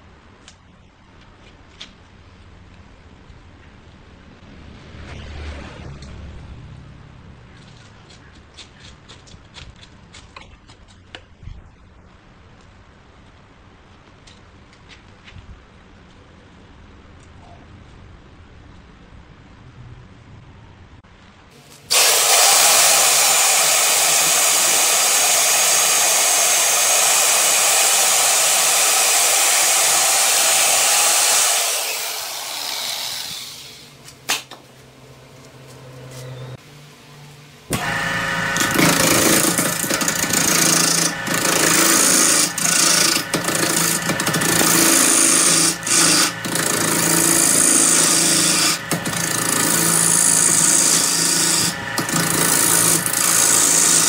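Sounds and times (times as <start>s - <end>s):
power tool hiss on wood: 21.7s - 33.9s
wood lathe cutting wood: 21.9s - 33.9s, 37.7s - 54.0s.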